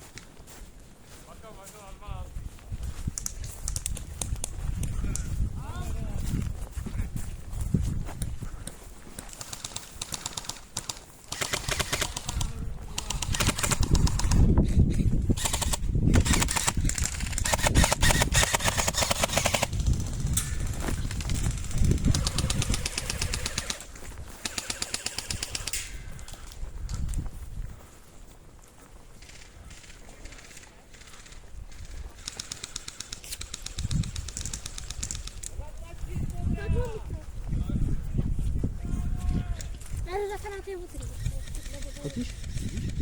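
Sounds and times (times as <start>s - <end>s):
airsoft guns firing rapidly: 9.4s - 14.6s, 15.3s - 20.4s, 21.0s - 25.9s, 29.2s - 35.4s, 41.3s - 43.0s.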